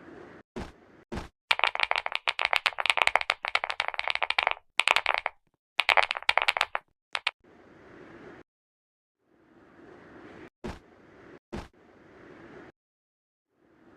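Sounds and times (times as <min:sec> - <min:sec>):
typing on mechanical keyboard: 0:01.5 - 0:07.4.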